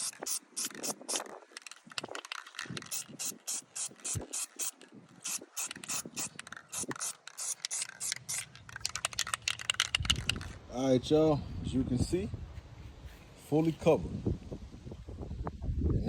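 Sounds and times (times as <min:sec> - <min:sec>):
spray can ball rattling: 0:00.0 - 0:10.6.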